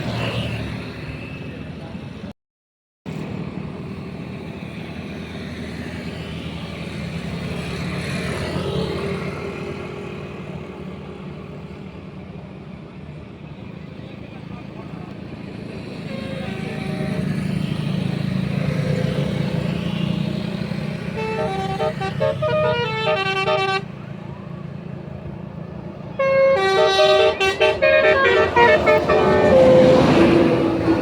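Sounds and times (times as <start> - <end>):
bus engine hum: 3.1 - 31.0
bus horn melody: 16.0 - 17.4, 21.1 - 24.0, 26.1 - 31.0.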